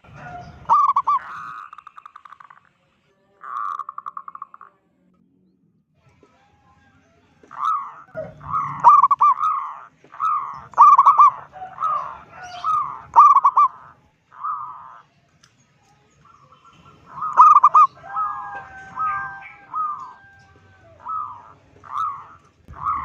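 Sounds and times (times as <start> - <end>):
dove cooing: 0.0 - 1.9, 7.5 - 15.1, 16.3 - 23.0.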